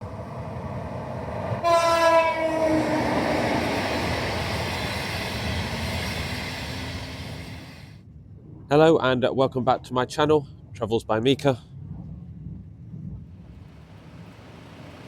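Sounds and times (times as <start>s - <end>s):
passing train rushing: 0.0s - 8.0s, 13.6s - 15.0s
train horn blast: 1.6s - 3.8s.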